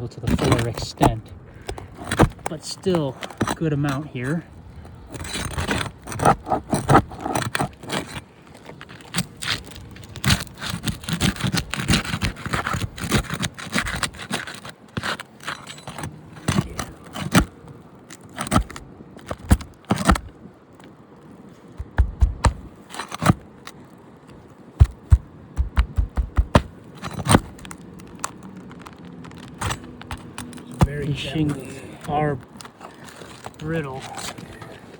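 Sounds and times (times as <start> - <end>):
shingles being pried and torn: 0.2 - 34.9.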